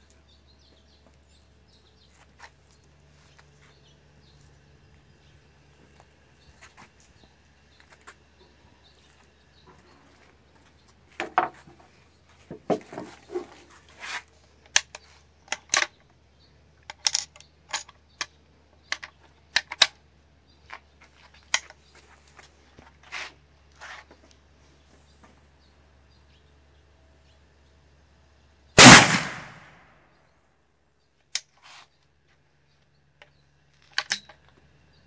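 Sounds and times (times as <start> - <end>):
rifle action clicking: 28.8 - 29.7.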